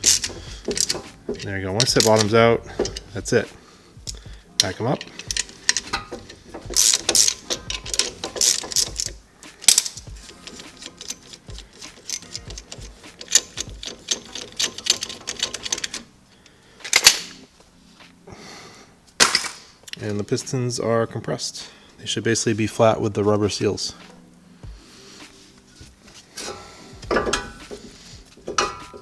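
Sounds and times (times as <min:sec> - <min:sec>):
ratchet wrench clicking: 0:00.0 - 0:03.2, 0:03.9 - 0:16.1, 0:16.8 - 0:17.4.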